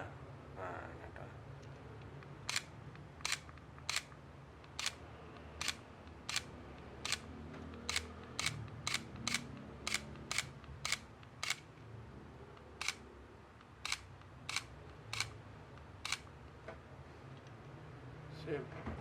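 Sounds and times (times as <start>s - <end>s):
camera shutter clicks: 2.4s - 11.7s, 12.8s - 13.0s, 13.7s - 15.4s, 16.0s - 16.3s.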